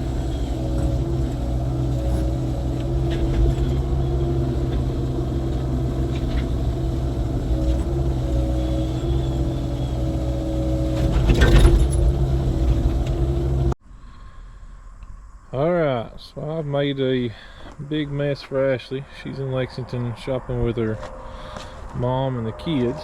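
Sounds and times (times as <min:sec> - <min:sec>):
diesel engine running: 0:00.0 - 0:13.8, 0:18.9 - 0:23.0
metal clanks: 0:10.9 - 0:13.6
scraping noise: 0:19.2 - 0:23.0.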